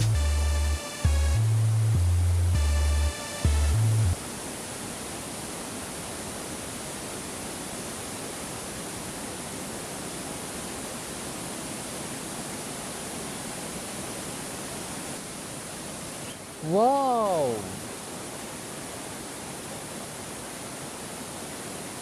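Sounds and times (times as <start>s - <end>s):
electronic background music: 0.0s - 4.2s
waterfall rushing: 4.2s - 22.0s.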